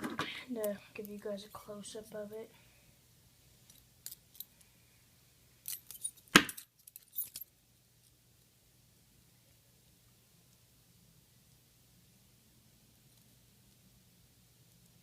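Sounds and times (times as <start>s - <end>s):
sharp metal clack: 5.7s - 7.4s.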